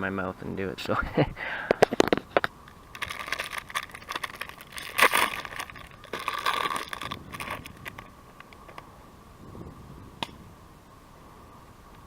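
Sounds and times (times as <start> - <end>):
crinkling and crackling by hand: 1.8 - 8.9.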